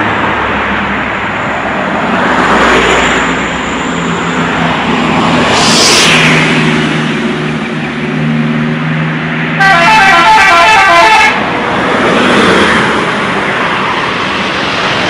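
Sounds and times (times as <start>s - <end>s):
bus engine humming: 0.0s - 15.0s
road noise: 0.0s - 15.0s
multi-tone bus air horn: 9.6s - 11.4s.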